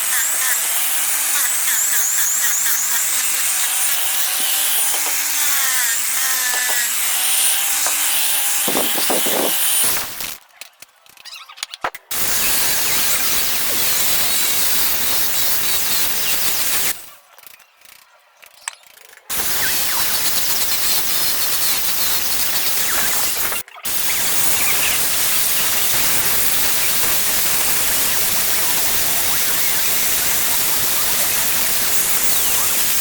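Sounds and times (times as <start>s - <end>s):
power tool motor hum: 0.0s - 10.4s, 12.1s - 17.1s, 19.3s - 33.0s
grinding hiss: 7.8s - 10.4s, 12.1s - 17.1s, 19.3s - 33.0s.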